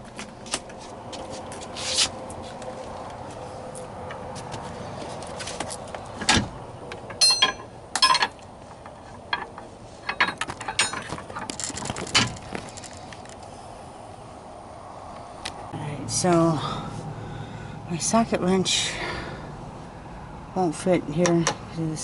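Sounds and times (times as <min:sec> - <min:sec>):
metal clinks of bolts and tools: 0:07.1 - 0:13.0.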